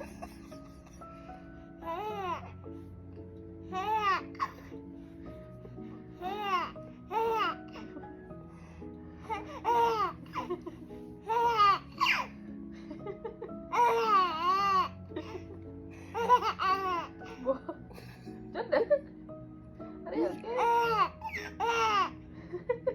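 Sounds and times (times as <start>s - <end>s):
soft background music: 0.0s - 22.9s
baby laughing: 1.8s - 2.5s, 3.7s - 4.8s, 6.2s - 8.0s, 9.2s - 12.4s, 13.7s - 15.5s, 16.2s - 17.4s, 20.4s - 22.2s.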